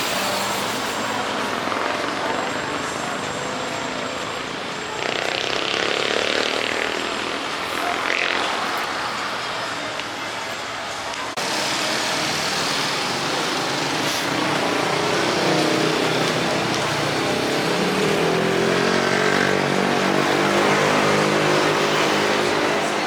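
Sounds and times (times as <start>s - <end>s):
vehicle engine and road noise: 0.0s - 23.0s.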